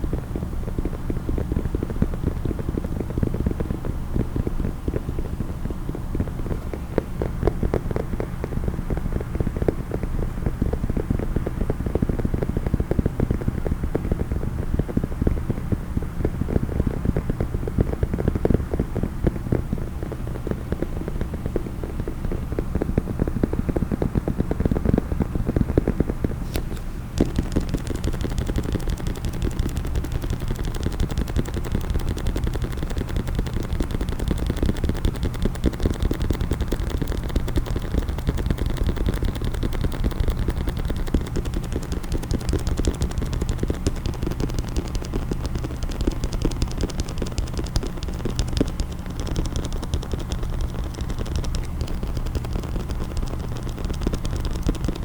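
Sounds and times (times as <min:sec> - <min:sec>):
rapid tapping on hard case: 0:00.0 - 0:55.0
sharp click: 0:25.5 - 0:55.0.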